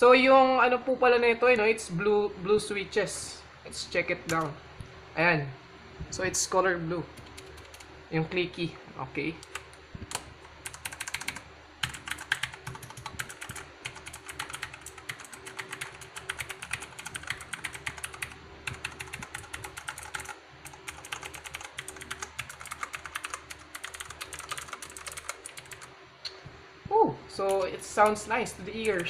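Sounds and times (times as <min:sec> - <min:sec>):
mechanical keyboard typing: 0:07.2 - 0:07.9, 0:09.4 - 0:25.9, 0:27.5 - 0:29.0.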